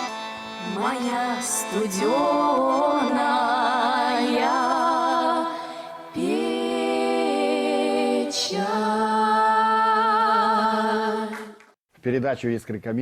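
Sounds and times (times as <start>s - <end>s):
accordion chords: 0.0s - 8.2s
person singing with vibrato: 0.6s - 11.6s.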